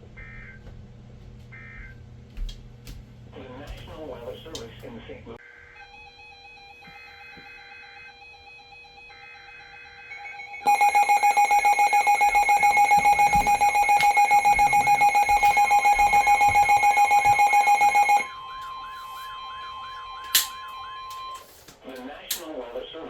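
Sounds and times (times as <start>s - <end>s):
alarm beeping rapidly: 10.7s - 18.3s
fast repeating warble: 10.7s - 18.3s
steady alert tone: 10.7s - 18.3s.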